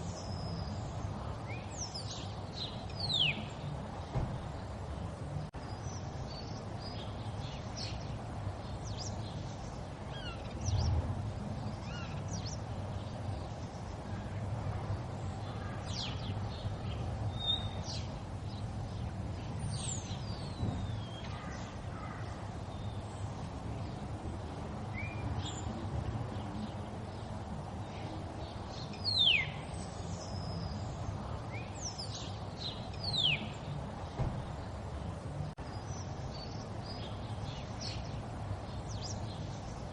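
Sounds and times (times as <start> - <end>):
bird calls: 0.0 - 24.0, 27.9 - 39.9
low thump: 4.1 - 4.5, 20.6 - 21.0, 34.1 - 34.6.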